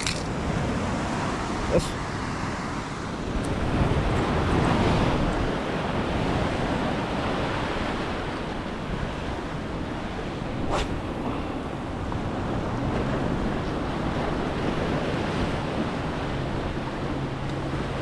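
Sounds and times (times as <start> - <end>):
surf breaking on shore: 0.0 - 18.0
wind buffeting microphone: 0.0 - 18.0
brief swish: 10.6 - 11.2.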